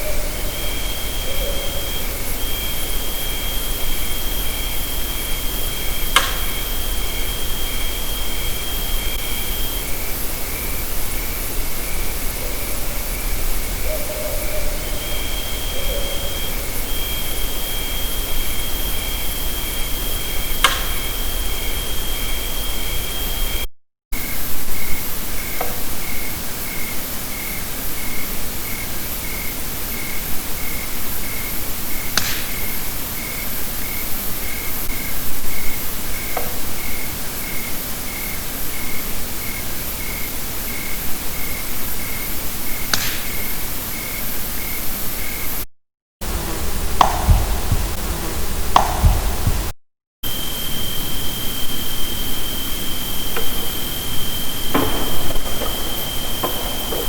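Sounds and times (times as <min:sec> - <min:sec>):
steady hiss: 0:00.0 - 0:23.6, 0:24.2 - 0:45.5, 0:46.2 - 0:57.0
insects trilling and chirping: 0:00.0 - 0:45.6, 0:50.2 - 0:57.0
sharp pops: 0:05.8 - 0:06.9, 0:20.5 - 0:21.4, 0:32.1 - 0:32.8, 0:42.8 - 0:43.6, 0:46.9 - 0:49.8, 0:53.4 - 0:57.0.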